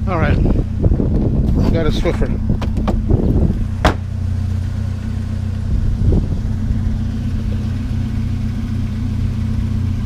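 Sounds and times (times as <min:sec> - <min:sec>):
vehicle engine running: 0:00.0 - 0:10.0
short knock: 0:03.8 - 0:04.1.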